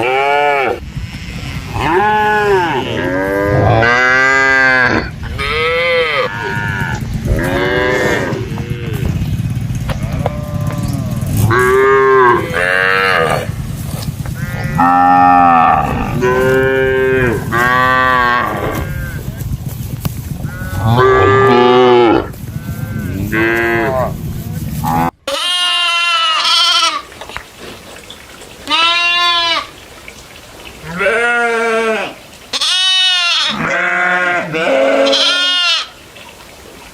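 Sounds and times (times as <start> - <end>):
cattle mooing: 0.0 - 13.6, 14.3 - 19.4, 20.4 - 24.2, 30.8 - 36.0
goat bleating: 3.7 - 9.3, 24.9 - 27.2, 28.6 - 29.8, 30.8 - 36.0
low rumble: 6.3 - 12.6, 13.4 - 25.1.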